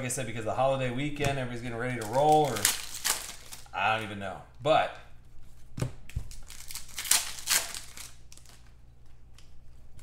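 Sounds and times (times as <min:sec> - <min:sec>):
card pack wrapper crinkling: 0:02.0 - 0:03.7, 0:06.2 - 0:08.7.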